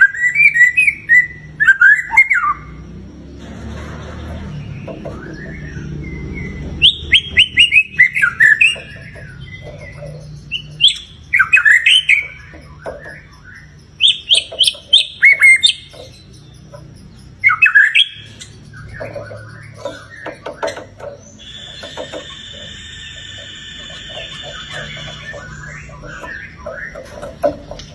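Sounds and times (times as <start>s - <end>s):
songbird singing sharp notes: 4.6s - 27.9s.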